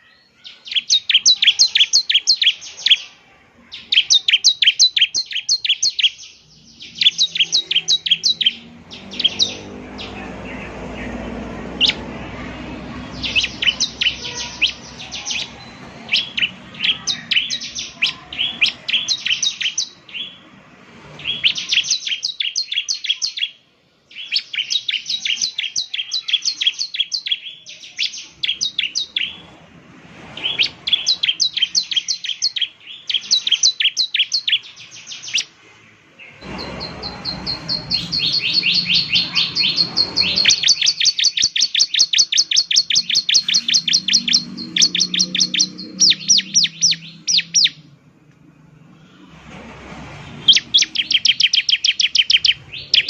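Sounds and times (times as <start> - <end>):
bird singing high chirps: 0.0 - 20.5, 21.2 - 29.6, 30.4 - 35.5, 36.2 - 48.0, 50.4 - 53.0
low rumbling noise: 6.4 - 21.8, 28.3 - 31.8, 35.6 - 41.0, 42.8 - 53.0.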